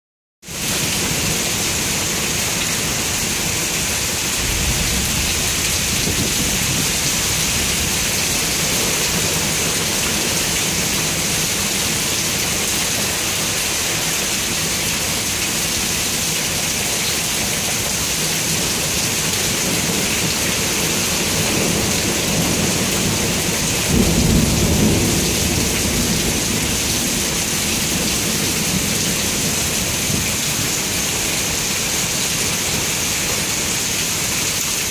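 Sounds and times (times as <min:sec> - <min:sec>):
steady rain falling: 0:00.5 - 0:34.9
thunder rumbling: 0:04.3 - 0:10.4, 0:21.3 - 0:30.3.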